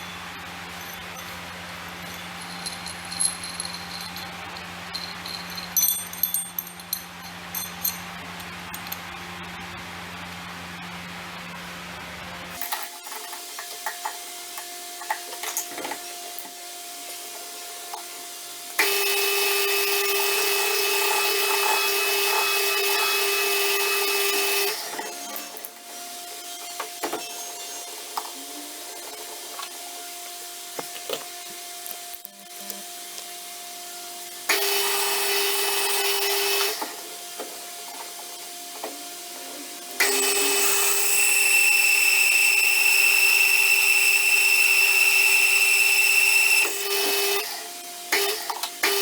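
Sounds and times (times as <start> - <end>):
handheld power tool running: 2.0 - 9.0, 18.7 - 28.4, 34.2 - 37.5, 40.0 - 49.0
metal pieces clinking: 2.0 - 9.0.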